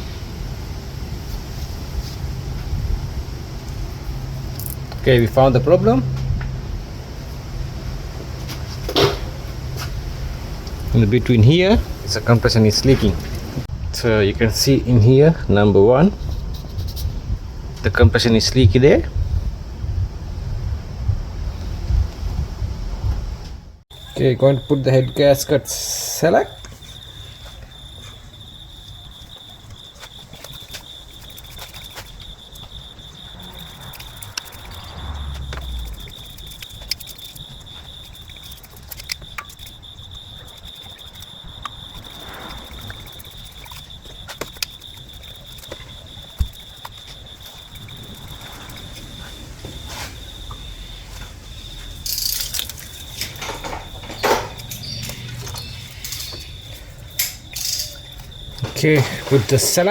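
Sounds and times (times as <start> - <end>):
steady high-pitched whine: 23.9 - 59.6
scraping handling noises: 51.1 - 59.9
tools clicking and tapping on metal: 52.1 - 56.6, 57.2 - 58.3.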